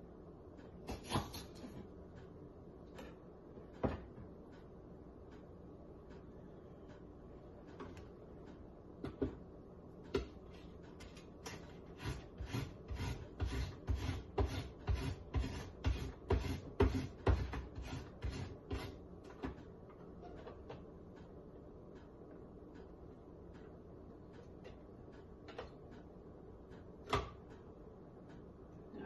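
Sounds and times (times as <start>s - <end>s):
ginger being grated: 11.4s - 19.0s.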